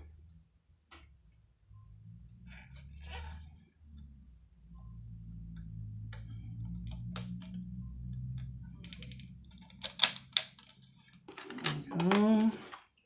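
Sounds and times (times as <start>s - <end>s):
low steady hum: 0.0s - 12.7s
sharp plastic snaps: 8.4s - 12.5s.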